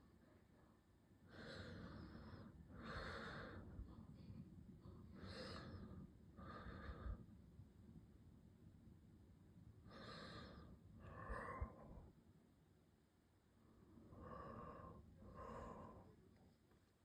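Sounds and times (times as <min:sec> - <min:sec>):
faint low rumble: 0:00.0 - 0:17.0
person breathing softly: 0:00.1 - 0:07.4, 0:09.8 - 0:12.2, 0:13.5 - 0:16.5.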